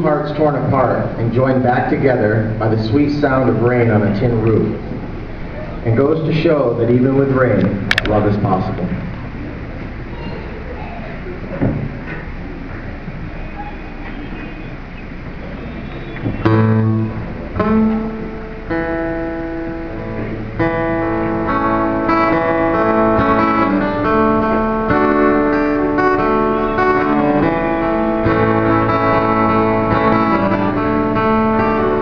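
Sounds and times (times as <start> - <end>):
guitar-led instrumental music: 16.2 - 32.0.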